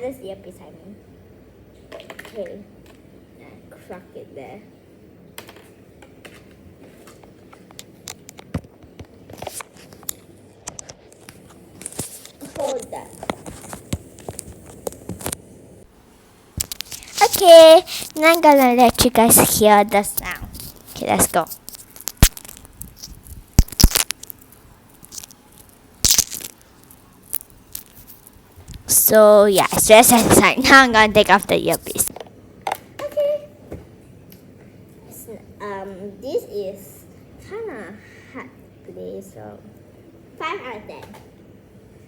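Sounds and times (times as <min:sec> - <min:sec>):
fidget toy crackling and clicking: 0:16.6 - 0:32.8.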